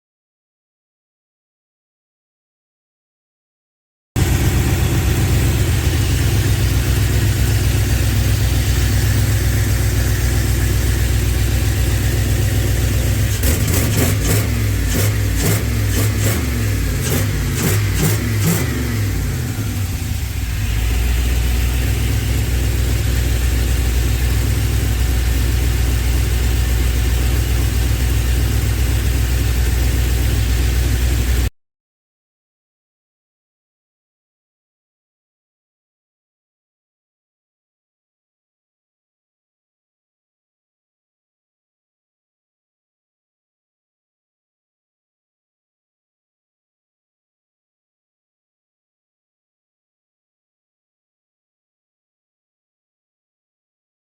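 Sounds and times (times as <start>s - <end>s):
car engine idling and revving: 4.2s - 31.5s.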